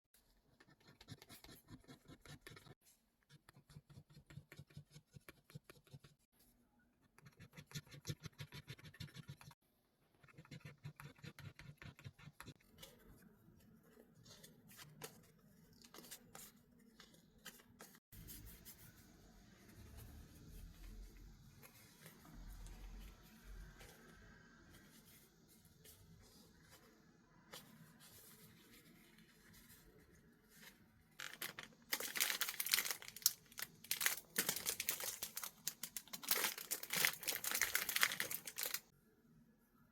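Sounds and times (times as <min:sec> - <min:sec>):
packaging scratching and rustling: 0:31.2 - 0:38.9.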